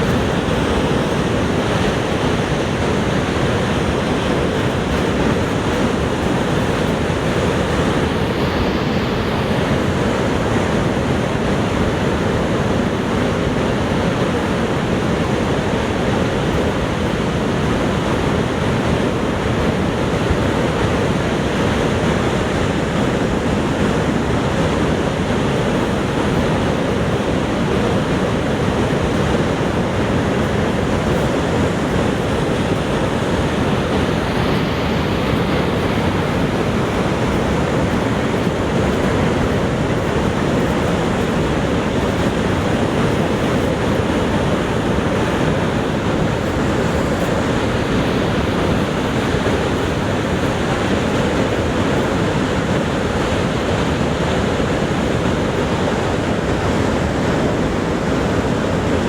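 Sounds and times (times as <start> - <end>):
waterfall rushing: 23.5 - 58.8.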